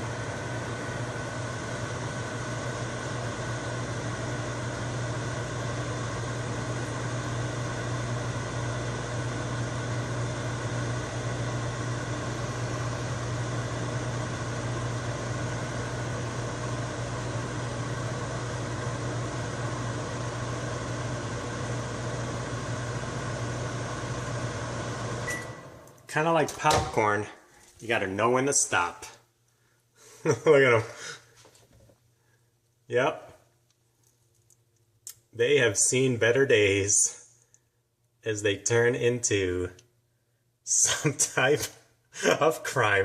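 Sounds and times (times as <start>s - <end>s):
microwave fan rushing: 0.0s - 27.3s
microwave oven humming: 0.0s - 27.3s.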